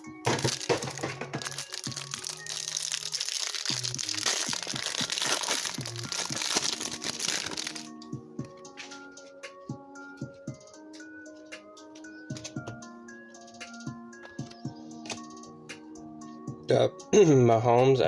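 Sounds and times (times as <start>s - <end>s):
background music: 0.0s - 18.0s
packaging crinkling and tearing: 0.3s - 7.9s.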